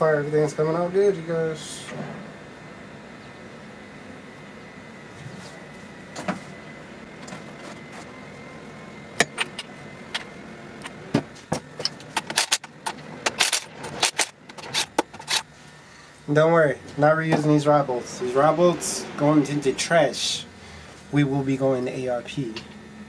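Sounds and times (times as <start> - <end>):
faint high hum: 0.0 - 23.0
metal engine parts clinking: 9.2 - 11.0, 11.8 - 15.5.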